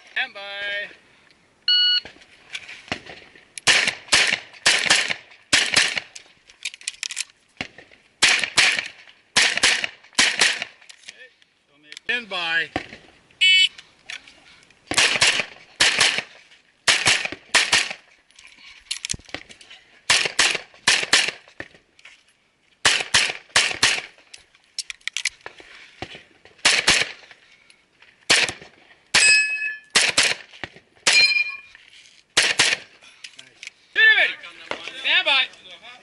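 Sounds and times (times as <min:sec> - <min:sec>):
brief ringing tone: 0:01.7 - 0:02.0
pistol shots: 0:03.6 - 0:06.1, 0:08.2 - 0:10.8, 0:14.9 - 0:18.0, 0:20.1 - 0:21.4, 0:22.8 - 0:24.2, 0:26.6 - 0:27.2, 0:28.3 - 0:31.6, 0:32.4 - 0:32.9.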